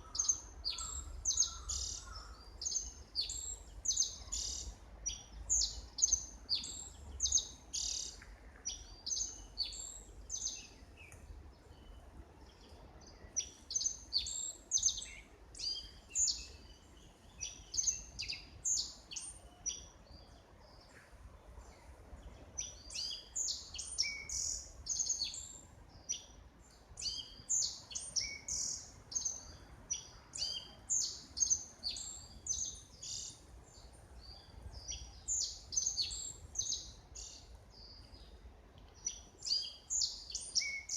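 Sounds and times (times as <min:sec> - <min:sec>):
small birds chirping: 0:00.0 - 0:40.9.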